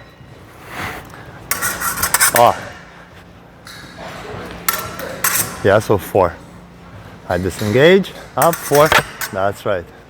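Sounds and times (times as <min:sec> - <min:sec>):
fencing blades clashing: 0:01.5 - 0:03.0, 0:03.6 - 0:05.9, 0:07.3 - 0:09.7.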